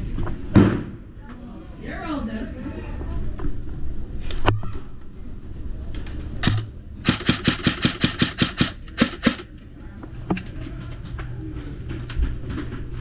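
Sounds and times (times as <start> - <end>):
airsoft gun shots: 6.4 - 9.5.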